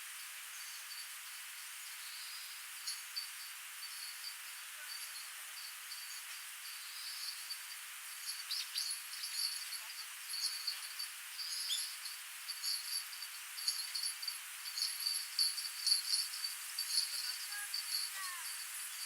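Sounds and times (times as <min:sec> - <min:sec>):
high-pitched chirping trills: 0:06.0 - 0:19.0.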